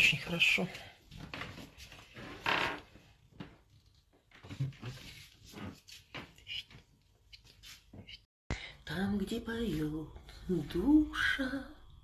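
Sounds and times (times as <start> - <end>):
rustling scrape: 4.4 - 6.6.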